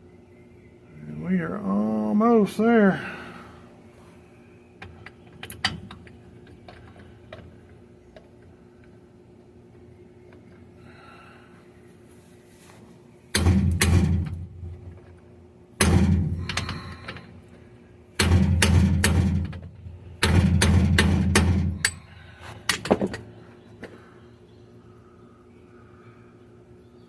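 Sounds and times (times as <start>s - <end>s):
hammer strikes on metal: 18.2s - 19.5s, 20.2s - 22.0s.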